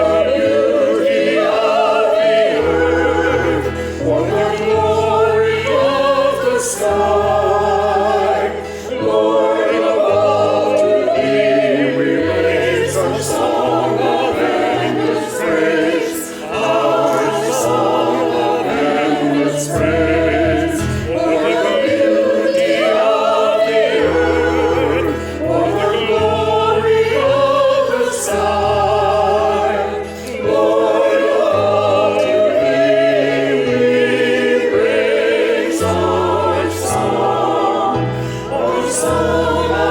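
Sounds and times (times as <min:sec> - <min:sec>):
choir singing: 0:00.0 - 0:39.9.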